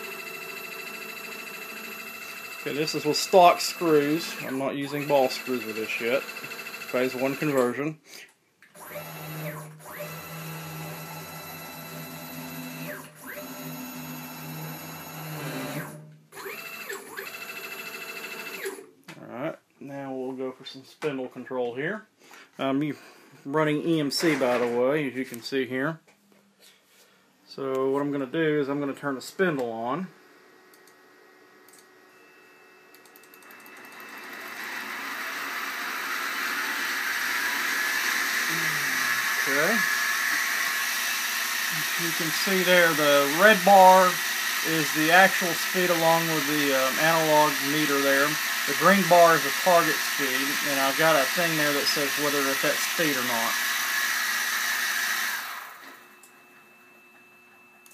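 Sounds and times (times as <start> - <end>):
mill table motor whine: 0.0 - 7.8, 8.8 - 18.9, 30.2 - 57.9.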